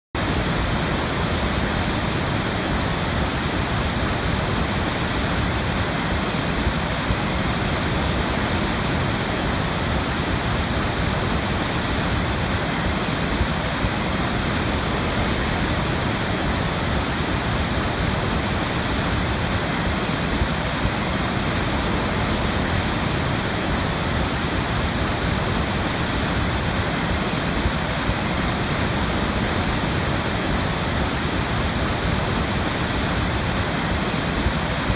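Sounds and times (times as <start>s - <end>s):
waterfall crashing: 0.2s - 34.9s.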